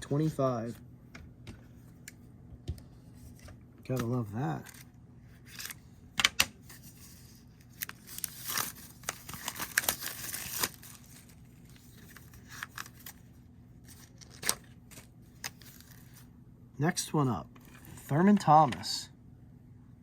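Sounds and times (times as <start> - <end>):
plastic card sleeves rustling: 2.9 - 16.3, 17.6 - 18.9.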